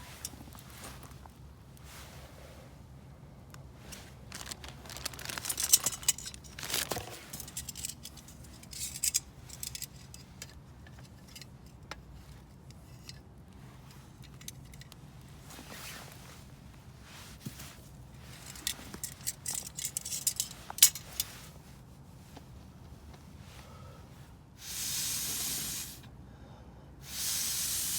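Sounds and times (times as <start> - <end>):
rustling: 3.6 - 10.4, 13.6 - 23.6
metallic clinking and jangling: 4.3 - 10.3, 18.3 - 21.3.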